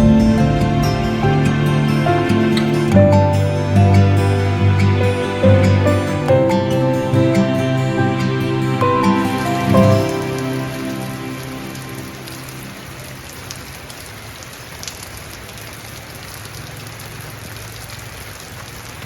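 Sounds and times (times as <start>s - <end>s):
soft music: 0.0s - 13.7s
steady rain: 0.0s - 19.0s.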